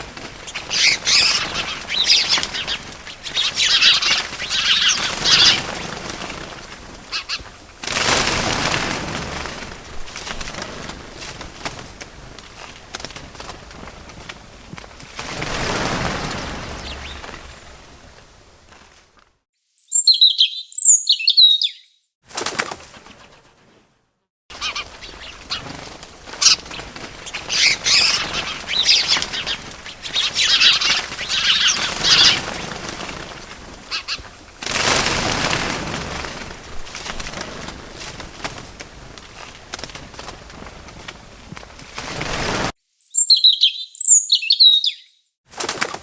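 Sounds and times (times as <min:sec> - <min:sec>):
whoosh of fluttering wings: 0:00.0 - 0:19.4, 0:22.3 - 0:42.8
wings flapping: 0:00.0 - 0:19.4, 0:22.2 - 0:42.8, 0:45.5 - 0:46.0
loud high bird chirps: 0:00.6 - 0:05.6, 0:19.6 - 0:22.1, 0:27.5 - 0:32.4, 0:42.8 - 0:45.4.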